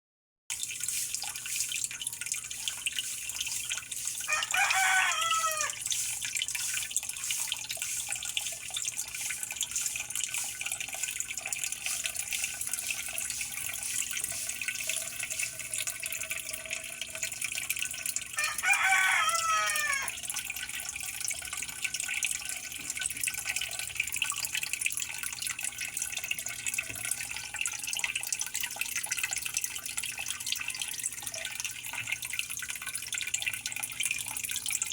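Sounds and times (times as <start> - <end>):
water dripping and trickling: 0.5 - 34.9
rooster crowing: 4.3 - 5.8, 18.4 - 20.2.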